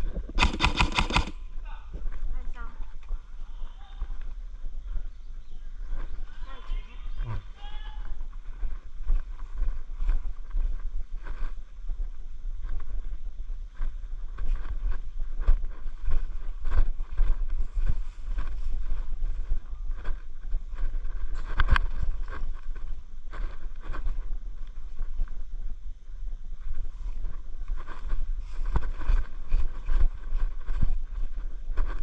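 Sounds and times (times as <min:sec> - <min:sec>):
low rumble on microphone: 0:00.0 - 0:32.0
sharp crack: 0:00.4 - 0:01.4.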